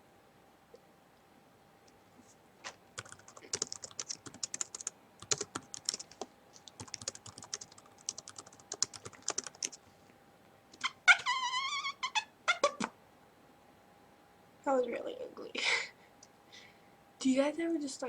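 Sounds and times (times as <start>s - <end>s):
rapid irregular clicking and tapping: 3.0s - 9.8s
high wavering cry: 10.8s - 12.9s.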